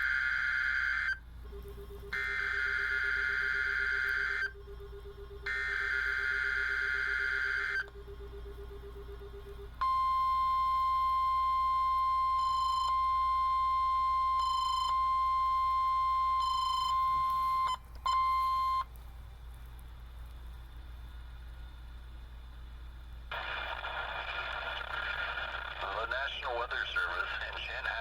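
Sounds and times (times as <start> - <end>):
warning alarm tone: 0.0 - 18.8.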